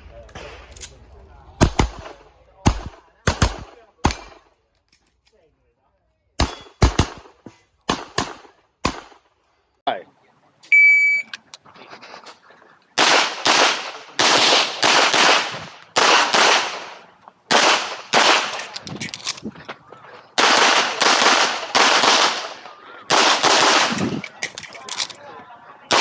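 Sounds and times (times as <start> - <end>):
shot timer beep: 10.7 - 11.4.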